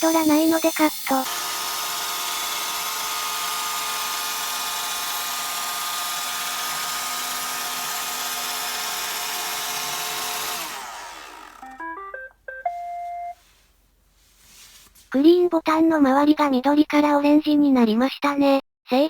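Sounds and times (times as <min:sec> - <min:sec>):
robot vacuum whirring: 0:00.0 - 0:11.8
rising beep tune: 0:11.6 - 0:13.4.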